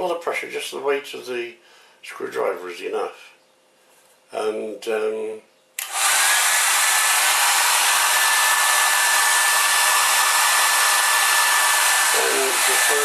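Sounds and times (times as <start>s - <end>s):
hair dryer blowing: 5.8s - 13.0s.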